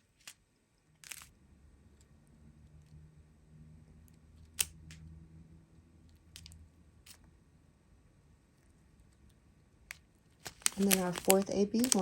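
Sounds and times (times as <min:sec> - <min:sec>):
faint low hum: 0:00.0 - 0:12.0
plastic bags crinkling: 0:10.4 - 0:12.0.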